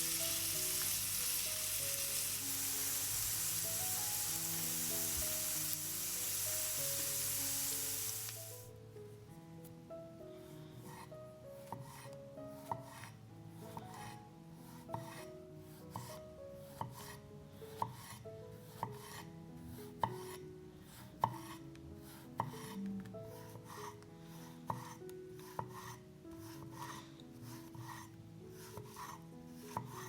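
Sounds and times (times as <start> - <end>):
food being grated: 0.0 - 8.4, 24.7 - 30.0
soft background music: 0.0 - 30.0.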